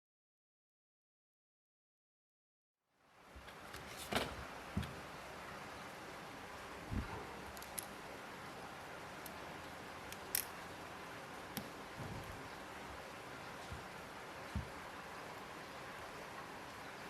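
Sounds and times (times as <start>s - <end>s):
background hiss: 2.9s - 17.0s
small tools clicking: 7.5s - 7.9s, 10.1s - 10.6s.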